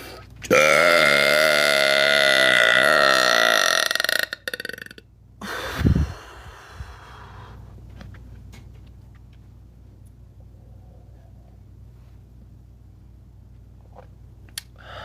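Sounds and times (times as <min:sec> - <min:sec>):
woman belching: 0:00.5 - 0:05.0.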